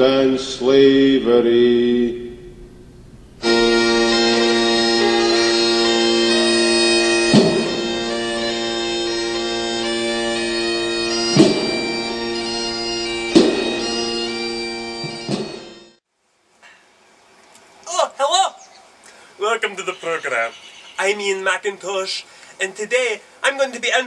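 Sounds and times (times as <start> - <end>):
sharp hits: 2.3 - 9.4, 11.1 - 15.8
bagpipes playing over drones: 3.4 - 16.0.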